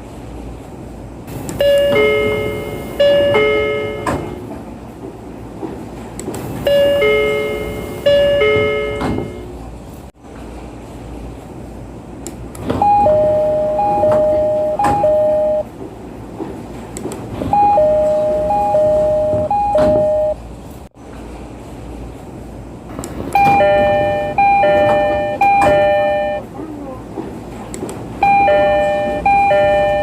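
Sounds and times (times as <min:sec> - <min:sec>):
platform and train noise: 0:00.0 - 0:30.0
train door chime: 0:01.4 - 0:04.5, 0:06.5 - 0:09.6, 0:12.8 - 0:15.7, 0:17.4 - 0:20.4, 0:23.3 - 0:26.4, 0:28.2 - 0:30.0
brighter door chime: 0:01.6 - 0:04.4, 0:06.7 - 0:09.5, 0:12.8 - 0:15.7, 0:17.6 - 0:20.4, 0:23.4 - 0:26.4, 0:28.2 - 0:30.0.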